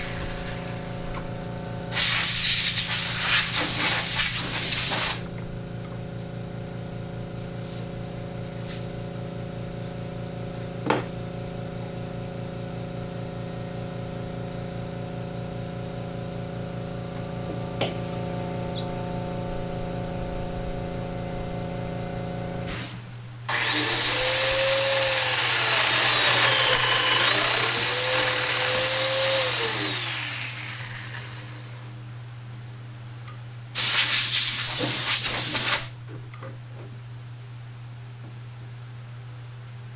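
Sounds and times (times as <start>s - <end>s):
power tool motor humming: 0.0s - 5.3s, 23.5s - 32.0s.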